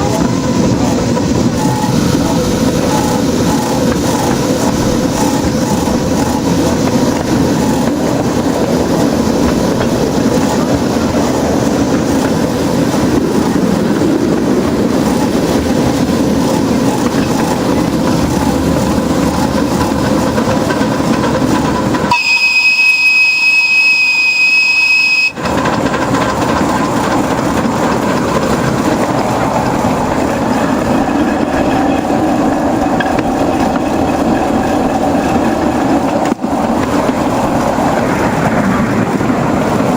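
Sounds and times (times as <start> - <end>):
wheels on rails: 0.0 - 39.9
steam whistle: 22.0 - 25.5.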